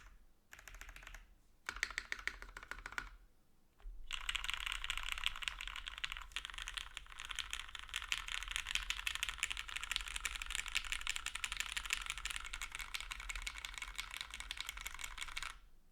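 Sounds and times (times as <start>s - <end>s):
mechanical keyboard typing: 0.0s - 3.2s, 4.1s - 15.6s.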